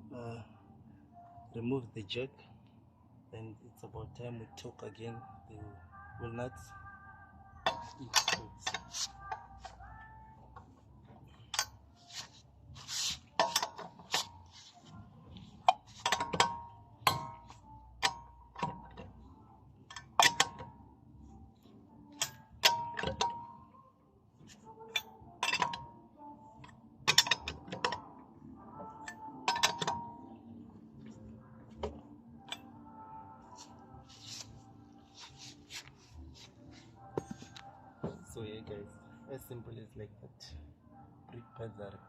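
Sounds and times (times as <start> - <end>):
wrench clicking on wheel nuts: 7.6 - 9.8, 13.0 - 14.4, 15.6 - 19.2, 19.9 - 20.8, 22.1 - 23.5, 24.8 - 25.9, 26.6 - 28.1, 28.8 - 30.1.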